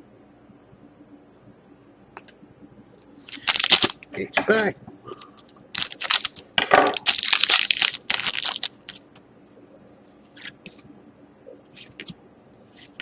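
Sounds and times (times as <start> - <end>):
wrapper tearing and crackling: 3.3 - 4.0, 5.8 - 9.0.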